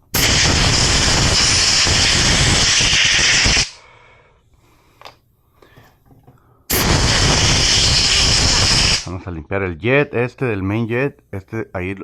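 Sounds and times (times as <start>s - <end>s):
compressed air blasting: 0.0s - 3.8s, 6.7s - 9.1s
faint clicks of parts handled: 5.0s - 6.4s.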